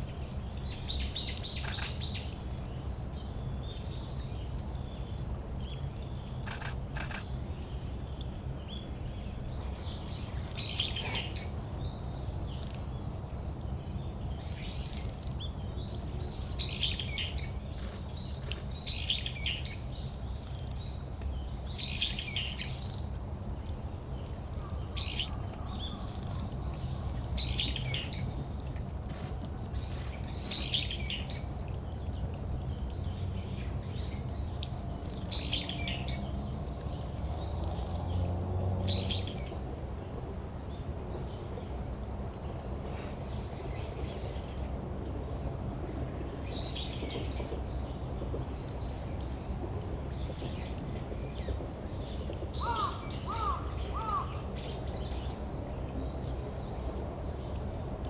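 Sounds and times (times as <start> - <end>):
insect trill: 0.0 - 58.0
songbird calls: 1.0 - 2.4, 52.6 - 54.4.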